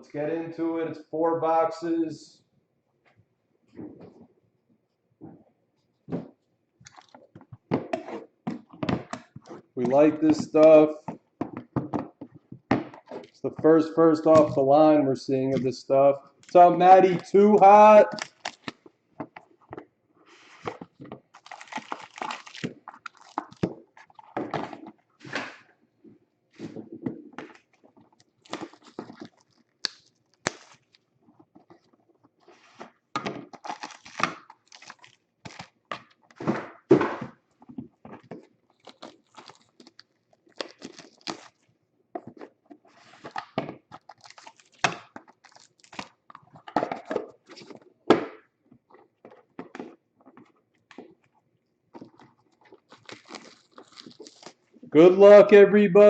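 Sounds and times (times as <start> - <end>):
plastic wrap tearing: 18.0 - 18.8, 21.3 - 24.3, 28.1 - 31.1, 33.5 - 36.3, 38.7 - 41.6, 43.9 - 46.6, 52.0 - 54.9
cardboard rustling: 52.0 - 54.8.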